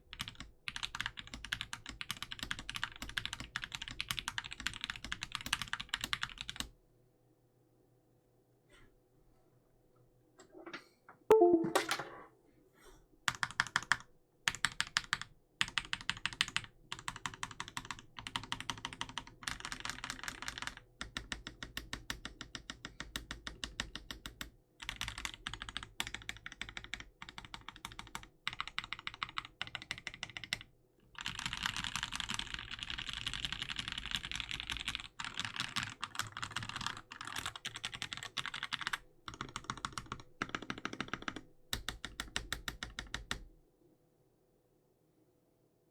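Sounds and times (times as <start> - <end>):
mechanical keyboard keystrokes: 0.1 - 6.7, 31.2 - 43.4.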